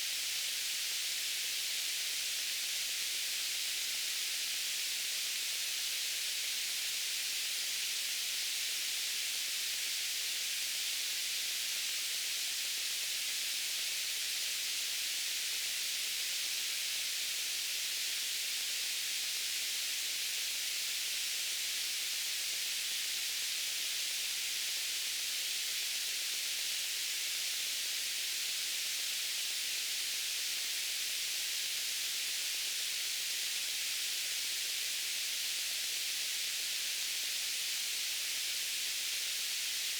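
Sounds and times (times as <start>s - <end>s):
steady white noise hiss: 0.0s - 39.9s.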